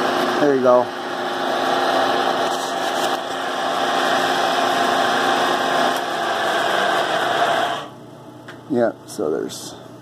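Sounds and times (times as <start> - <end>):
power tool cutting: 0.0 - 7.9.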